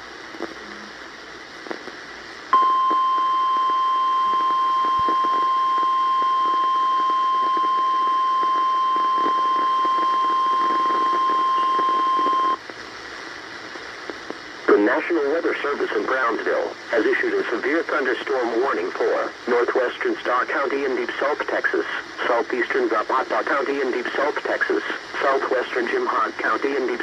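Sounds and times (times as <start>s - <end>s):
radio hiss: 0.0s - 27.0s
steady high alarm tone: 2.6s - 12.6s.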